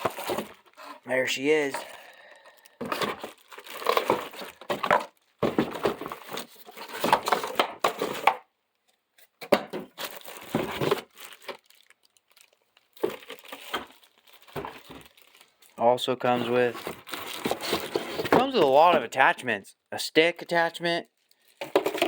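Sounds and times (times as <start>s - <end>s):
packaging tearing: 0.0s - 5.2s, 10.0s - 18.6s
packaging crinkling and rustling: 0.0s - 8.4s, 9.8s - 19.2s, 20.5s - 22.0s.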